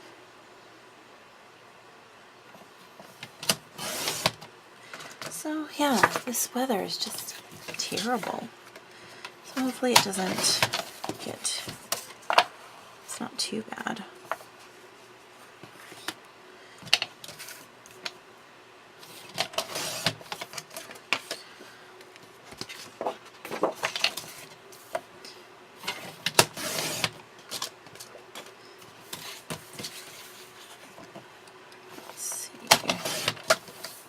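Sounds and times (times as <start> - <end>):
paper rustling and scraping: 3.7 - 4.4, 9.5 - 12.3, 19.0 - 21.4, 22.5 - 25.0, 25.8 - 31.2, 31.9 - 34.0.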